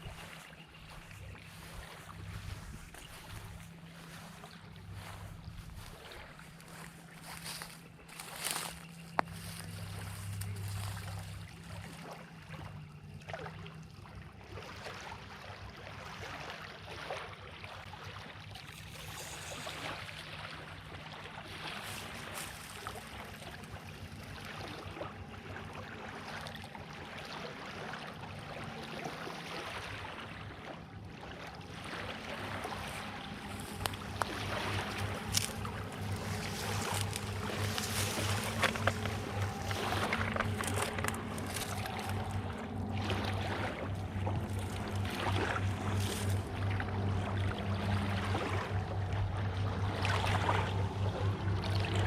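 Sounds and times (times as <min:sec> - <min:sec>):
low hum: 0:00.0 - 0:14.7, 0:18.4 - 0:27.2, 0:28.1 - 0:52.0
water lapping against shore: 0:00.0 - 0:52.0.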